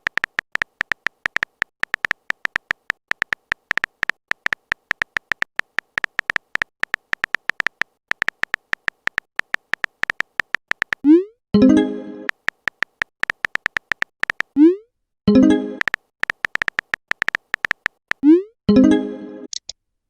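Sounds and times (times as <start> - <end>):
phone keyboard typing clicks: 0.0 - 11.2, 12.3 - 14.6, 15.8 - 18.3.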